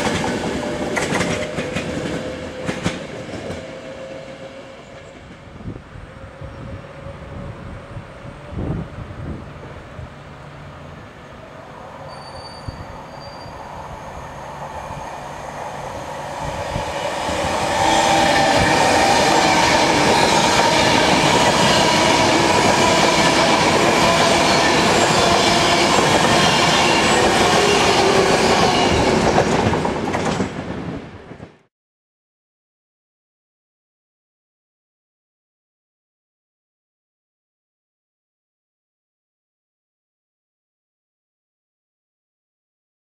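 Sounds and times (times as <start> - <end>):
train passing at speed: 0.0 - 31.7.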